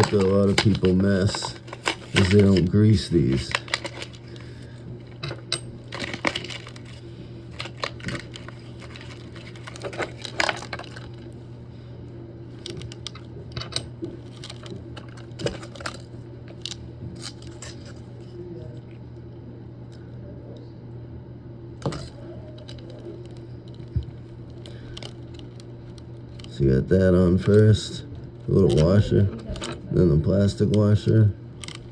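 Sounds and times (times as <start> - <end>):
small metal parts clinking: 0.0 - 4.4, 5.2 - 11.2, 31.6 - 31.9
steady low hum: 0.0 - 31.9.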